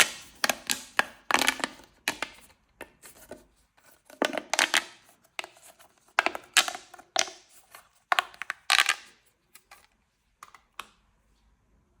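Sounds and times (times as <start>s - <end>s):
plastic pop tubes crackling: 0.0s - 3.0s, 4.1s - 5.6s, 6.2s - 9.8s.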